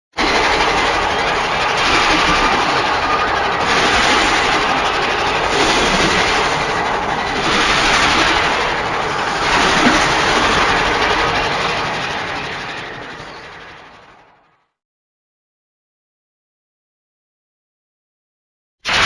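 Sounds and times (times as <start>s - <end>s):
loud rushing creature sound: 0.2s - 12.6s.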